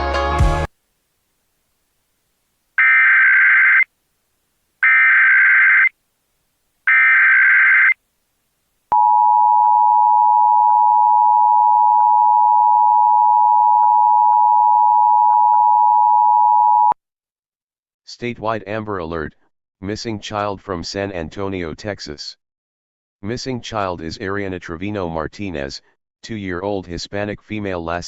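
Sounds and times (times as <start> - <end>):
warbling data tone bursts: 2.8 - 3.8, 4.8 - 5.9, 6.9 - 8.0.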